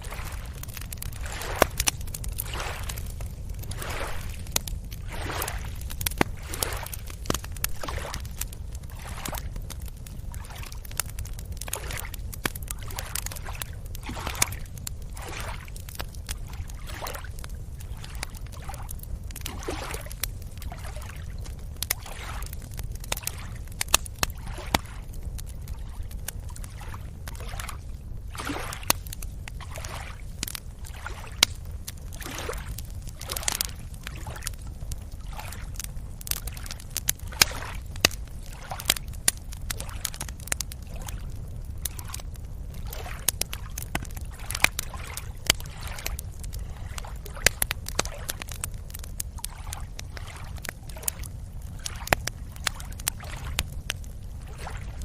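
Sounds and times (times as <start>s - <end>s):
steady low rumble: 0.0s - 19.6s
small waves lapping: 0.0s - 23.7s, 24.3s - 40.2s, 40.8s - 42.2s, 42.8s - 48.6s, 49.4s - 51.2s, 51.8s - 54.9s.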